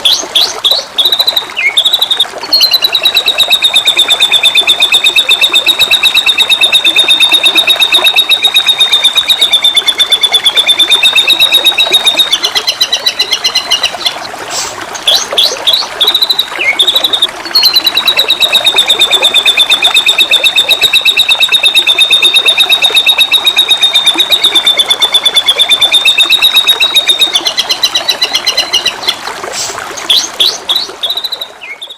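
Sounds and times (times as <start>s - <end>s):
bird singing a rapid trill: 0.0s - 14.2s, 15.0s - 29.2s, 30.1s - 31.9s
flowing water hissing: 13.9s - 18.7s, 29.1s - 31.0s.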